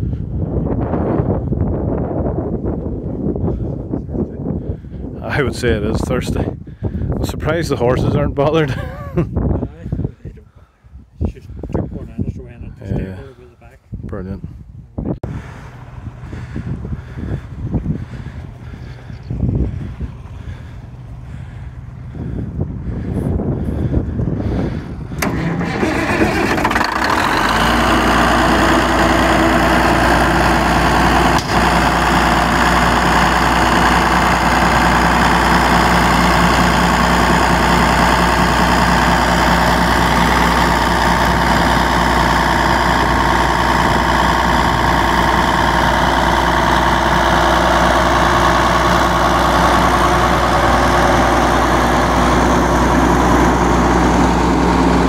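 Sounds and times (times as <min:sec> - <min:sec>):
diesel compressor engine running: 0:15.2 - 0:55.0.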